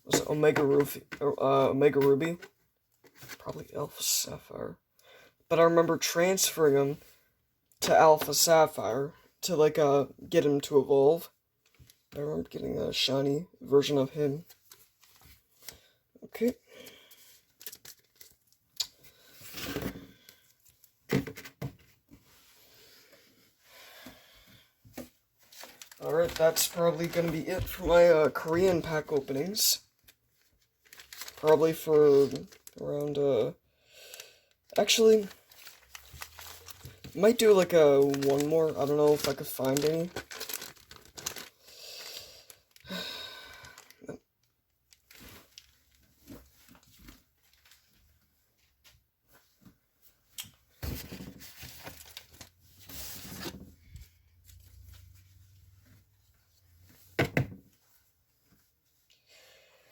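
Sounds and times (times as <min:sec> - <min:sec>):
foil wrapper crinkling: 0:16.9 - 0:18.9, 0:25.5 - 0:33.2, 0:34.7 - 0:44.1, 0:44.9 - 0:47.8, 0:51.6 - 0:52.5
cards rustling: 0:25.4 - 0:29.7, 0:30.4 - 0:33.5, 0:34.7 - 0:42.8, 0:51.4 - 0:53.6.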